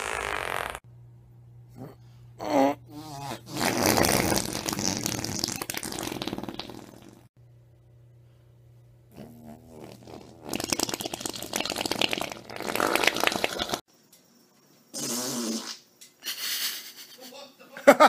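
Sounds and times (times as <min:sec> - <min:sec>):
man farting: 0:00.0 - 0:00.8, 0:01.8 - 0:07.3, 0:09.1 - 0:13.8, 0:14.9 - 0:15.9.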